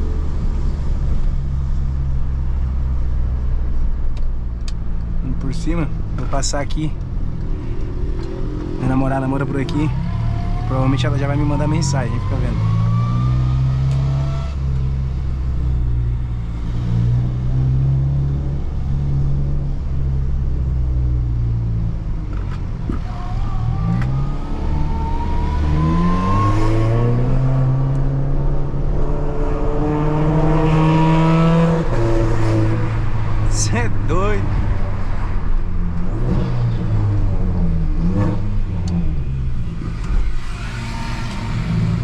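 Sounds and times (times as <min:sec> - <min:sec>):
turbocharged car engine: 0:00.0 - 0:42.0
rising turbo whine: 0:22.9 - 0:33.9, 0:34.5 - 0:42.0.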